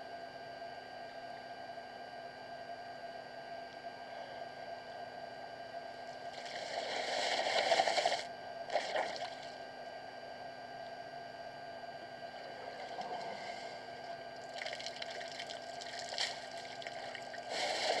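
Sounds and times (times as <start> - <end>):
elephant sloshing water: 14.5 - 18.0
water splash: 14.5 - 18.0.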